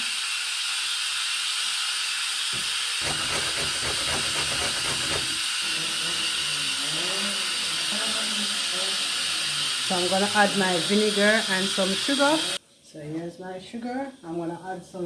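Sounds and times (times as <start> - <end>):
carrot rasping on grater: 2.6 - 5.6.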